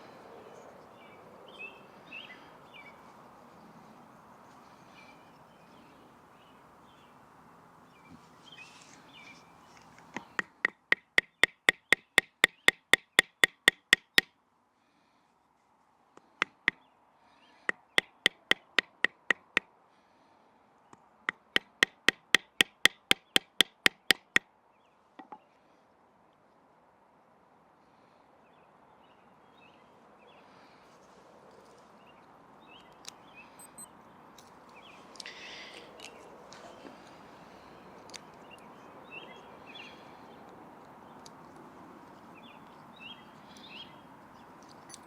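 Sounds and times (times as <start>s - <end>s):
wooden baton knocking knife: 10.2s - 14.3s, 17.7s - 19.6s, 21.3s - 24.4s.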